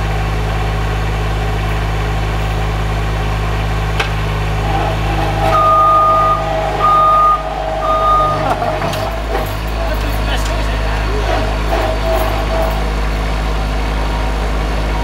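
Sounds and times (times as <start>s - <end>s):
loader engine idling: 0.0s - 15.0s
mechanical whine: 4.5s - 15.0s
high electronic beeper: 5.4s - 8.7s.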